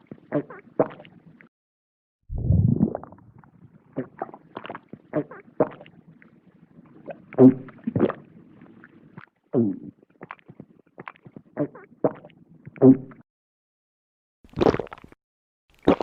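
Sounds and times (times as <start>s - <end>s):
person gulping and mouth smacks: 9.2s - 12.9s, 14.5s - 16.0s.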